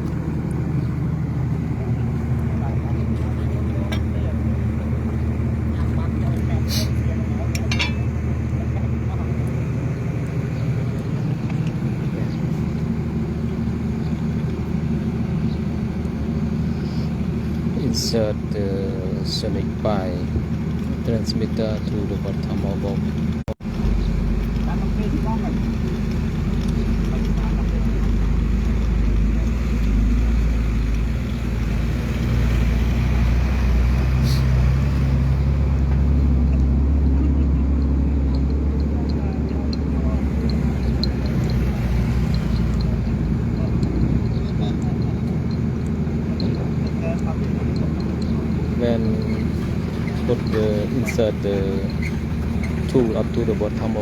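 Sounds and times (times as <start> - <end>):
engine humming steadily: 0.0 - 54.0.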